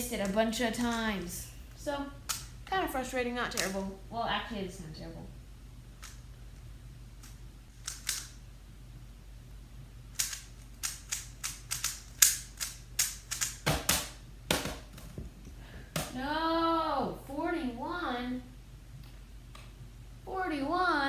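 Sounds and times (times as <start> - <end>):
plastic puzzle clicking: 7.2 - 8.4, 10.1 - 13.6.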